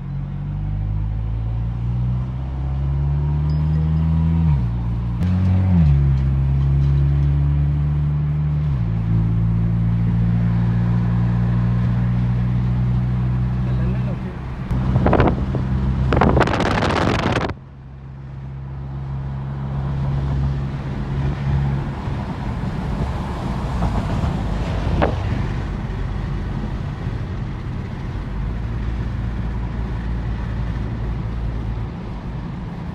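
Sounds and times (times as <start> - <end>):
car engine humming: 0.0 - 32.9
road noise: 0.0 - 32.9
loud rush of noise: 13.8 - 17.6.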